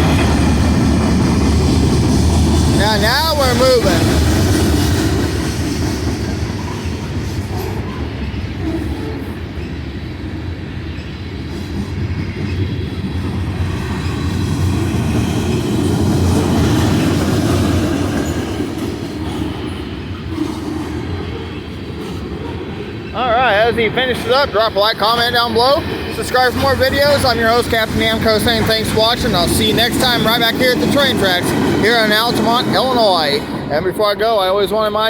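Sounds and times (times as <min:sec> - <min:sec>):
train wheels rumbling on rails: 0:00.0 - 0:35.0.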